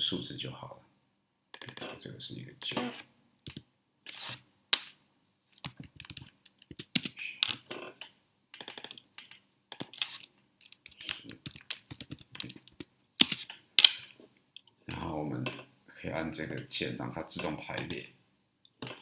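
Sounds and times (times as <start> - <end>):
computer keyboard typing: 5.5 - 7.2, 8.6 - 9.0, 9.7 - 13.5.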